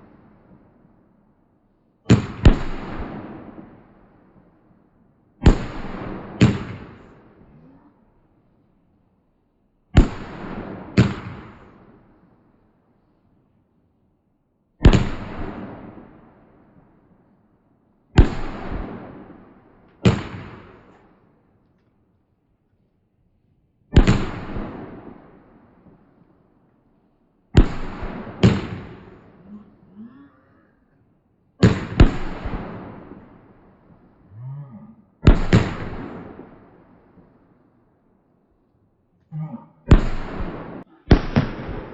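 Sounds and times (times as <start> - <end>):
fireworks banging: 24.0 - 26.2, 27.6 - 29.4, 31.6 - 34.1, 35.2 - 37.4, 39.8 - 41.9.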